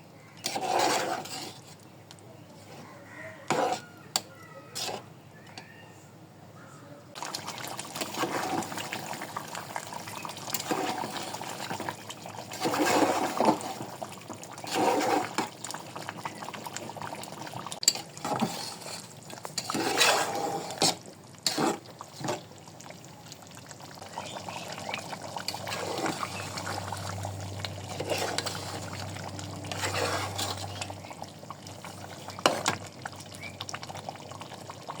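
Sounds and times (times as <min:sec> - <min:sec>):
liquid pouring and sloshing: 0:07.2 - 0:35.0.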